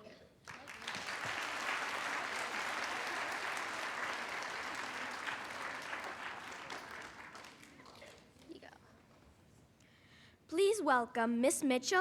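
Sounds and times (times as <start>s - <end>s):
audience applauding: 0.5s - 8.3s.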